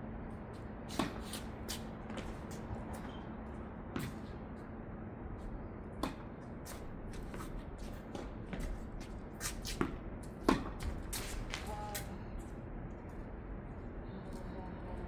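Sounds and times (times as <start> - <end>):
racket hitting tennis ball: 10.4 - 10.8.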